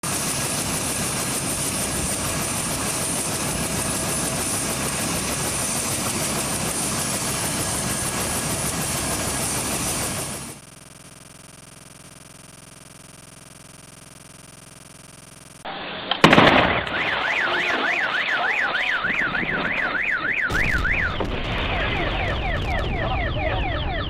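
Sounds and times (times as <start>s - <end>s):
helicopter rotor chopping: 0.0s - 15.7s.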